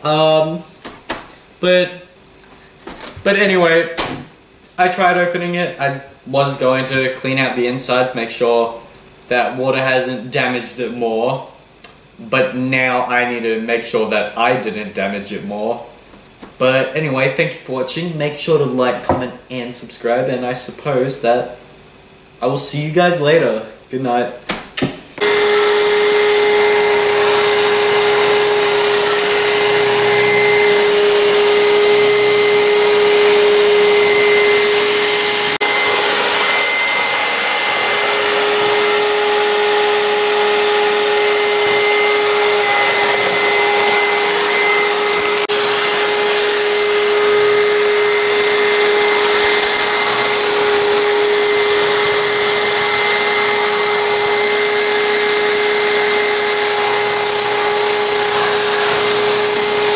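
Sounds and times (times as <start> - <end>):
robot vacuum suction motor: 25.2 - 59.9.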